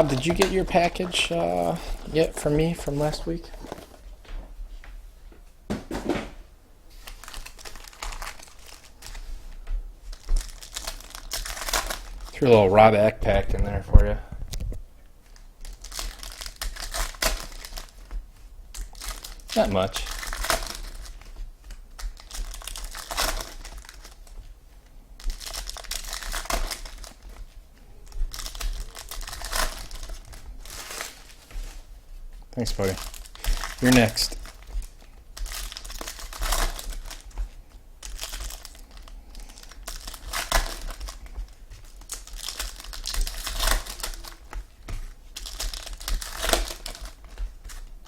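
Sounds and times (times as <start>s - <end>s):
wrapper tearing: 0.0s - 4.0s, 7.0s - 9.2s, 10.1s - 12.6s, 15.3s - 18.1s, 18.7s - 24.3s, 25.2s - 27.4s, 28.0s - 31.4s, 32.6s - 37.4s, 38.0s - 47.9s
plastic wrapper crinkling: 0.0s - 4.1s, 6.9s - 9.4s, 10.0s - 48.0s.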